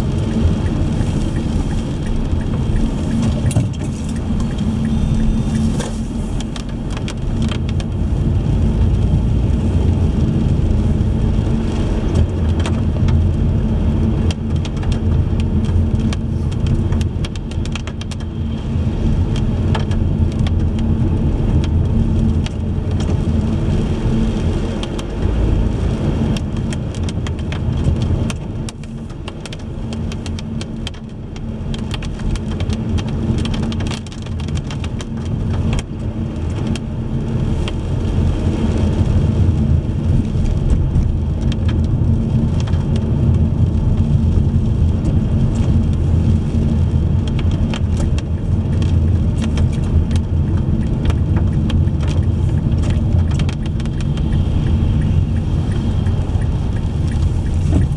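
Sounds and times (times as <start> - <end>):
raindrops ticking on car: 0.0 - 57.9
road and engine rumble: 0.0 - 57.9.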